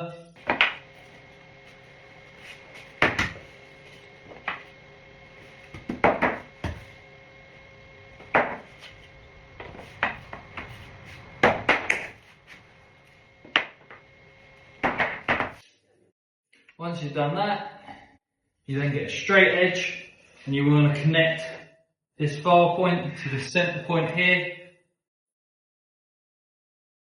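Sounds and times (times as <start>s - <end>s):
wooden planks clacking: 11.4s - 12.2s.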